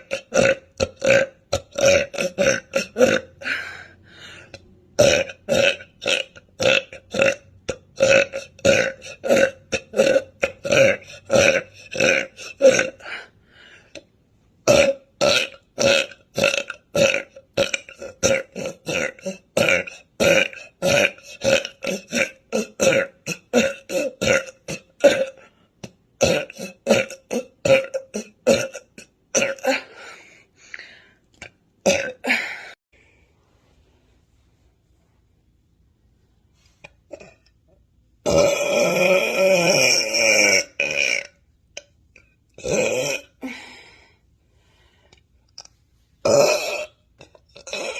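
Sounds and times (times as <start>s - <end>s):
woman burping: 0.0s - 3.9s, 4.5s - 13.2s, 14.6s - 30.2s, 31.3s - 32.8s, 37.1s - 41.9s, 42.6s - 43.6s, 45.6s - 47.9s.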